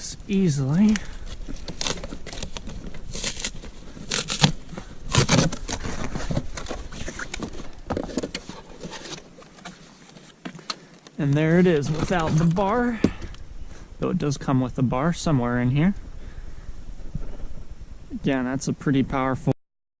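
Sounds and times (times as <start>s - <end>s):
cardboard and plastic packaging rustling: 0.5s - 13.4s.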